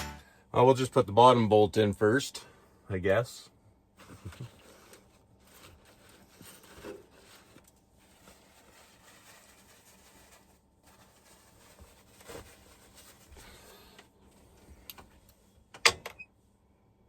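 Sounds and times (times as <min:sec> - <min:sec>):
soft rustling and scraping: 0:04.0 - 0:15.6.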